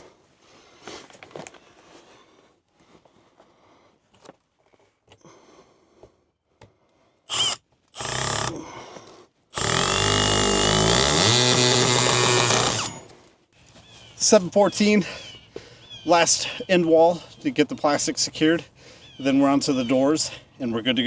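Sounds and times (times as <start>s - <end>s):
cordless drill running: 7.3s - 8.8s, 9.6s - 13.1s.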